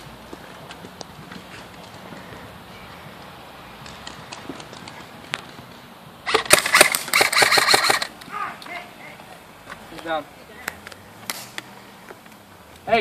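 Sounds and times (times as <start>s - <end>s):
airsoft rifle full-auto fire: 6.3s - 8.1s.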